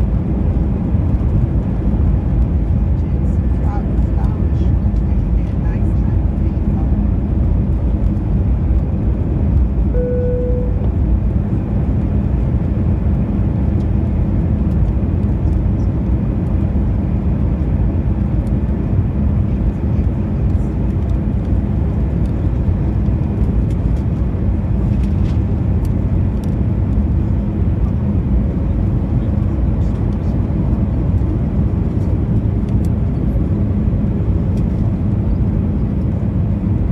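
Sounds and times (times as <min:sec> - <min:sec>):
aircraft cabin engine noise: 0:00.0 - 0:36.9
short clear tone: 0:09.9 - 0:10.9.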